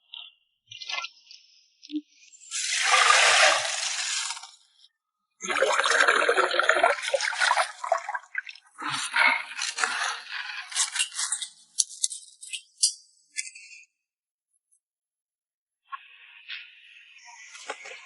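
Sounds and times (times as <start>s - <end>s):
water sloshing and scraping: 2.5s - 4.6s, 6.7s - 11.6s.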